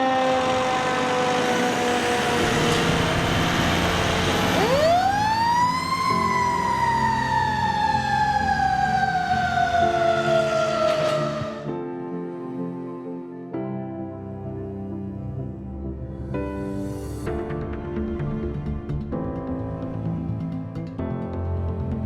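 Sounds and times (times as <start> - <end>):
fire engine siren: 0.0 - 11.9.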